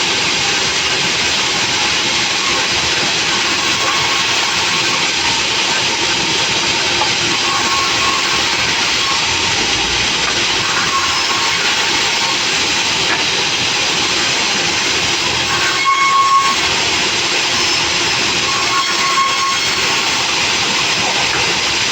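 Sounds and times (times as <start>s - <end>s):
saw running with rushing hiss: 0.0s - 21.9s.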